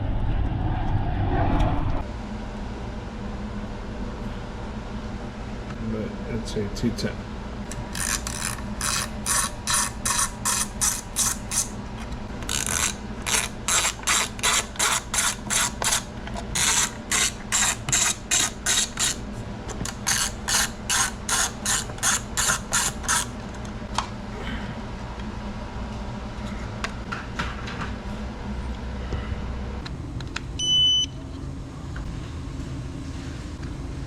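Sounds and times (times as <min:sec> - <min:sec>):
hand ratchet clicking: 0:12.4 - 0:16.0.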